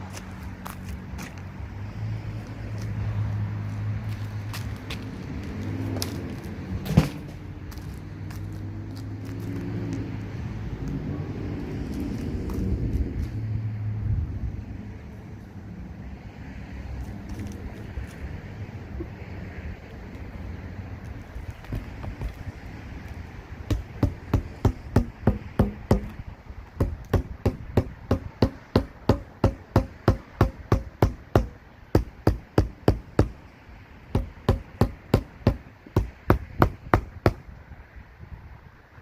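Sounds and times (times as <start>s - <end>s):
hammer striking a roof: 23.7s - 26.2s, 26.8s - 33.4s, 34.1s - 37.4s.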